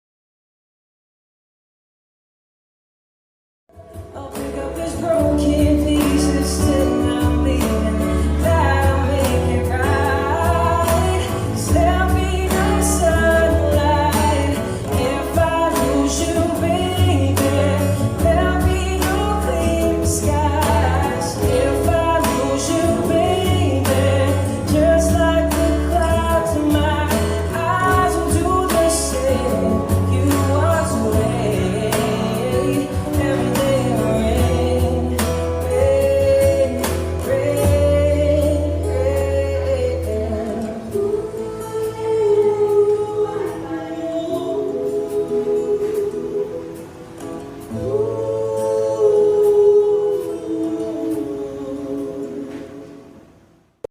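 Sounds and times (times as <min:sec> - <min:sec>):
steady bass line: 0:03.7 - 0:45.4
song with singing: 0:03.8 - 0:53.6.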